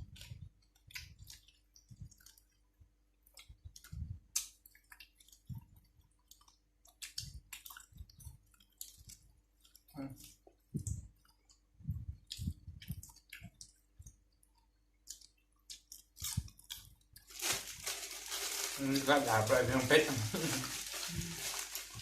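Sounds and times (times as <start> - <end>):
person chewing and lip smacking: 0.0 - 17.3.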